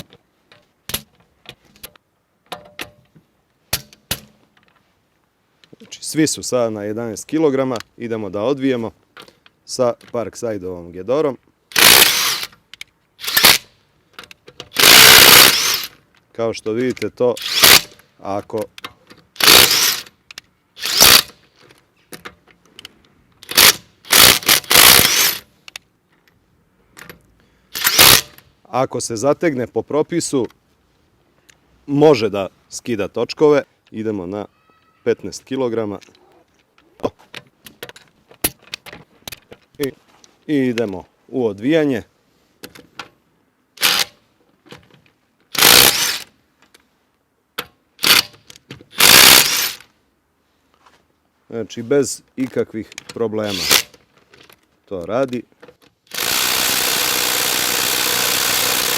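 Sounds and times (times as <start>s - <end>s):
small metallic clicks: 11.7s - 28.5s
impact driver hammering: 14.8s - 15.8s.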